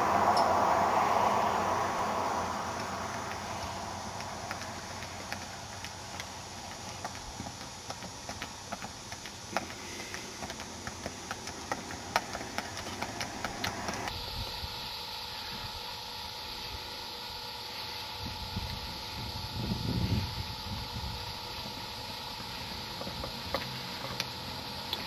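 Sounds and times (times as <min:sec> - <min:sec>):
steady wind-like hiss: 0:00.0 - 0:25.0
horse hooves on hard ground: 0:01.6 - 0:14.2, 0:20.2 - 0:25.0.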